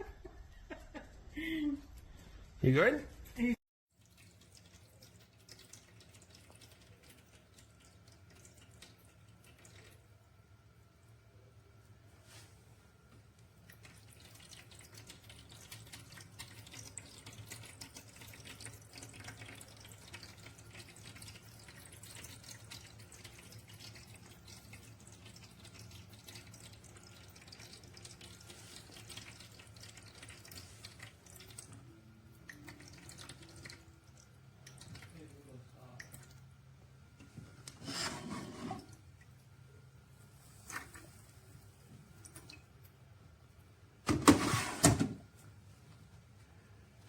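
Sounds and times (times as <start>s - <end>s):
water trickling and splashing: 3.9s - 10.2s, 13.4s - 36.6s.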